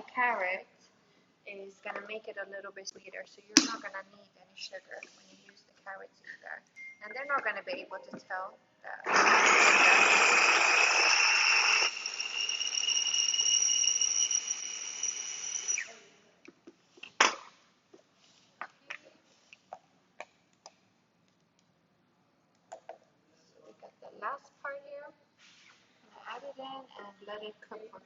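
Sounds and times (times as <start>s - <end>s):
electric food chopper whining: 9.0s - 15.9s.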